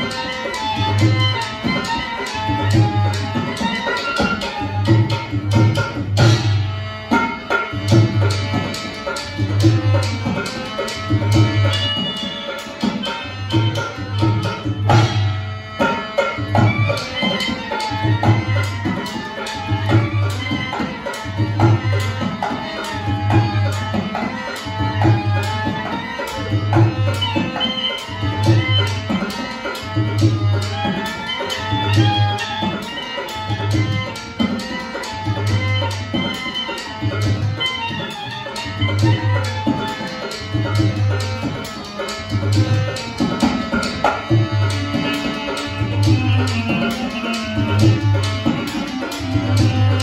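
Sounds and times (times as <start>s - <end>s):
hand drums beat: 0.0s - 50.0s
folk melody: 9.2s - 50.0s.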